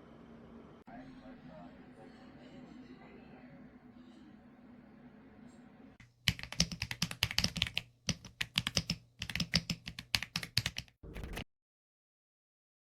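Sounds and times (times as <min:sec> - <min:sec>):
mechanical keyboard typing: 0:06.2 - 0:11.4.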